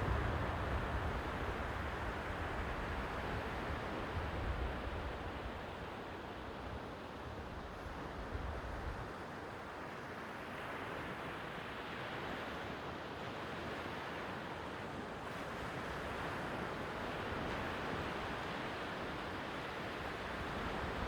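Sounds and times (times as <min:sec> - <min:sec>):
wind rumble on microphone: 0:00.0 - 0:05.4.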